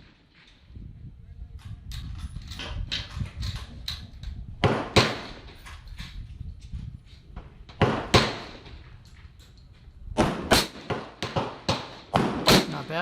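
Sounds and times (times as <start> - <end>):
gunshots with echo: 10.2 - 13.0.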